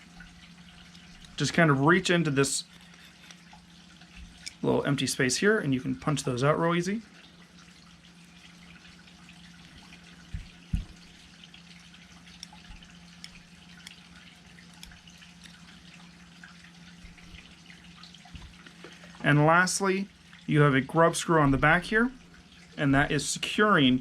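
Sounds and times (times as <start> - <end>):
steady low hum: 0.0 - 24.0
soft knocks: 10.3 - 11.0.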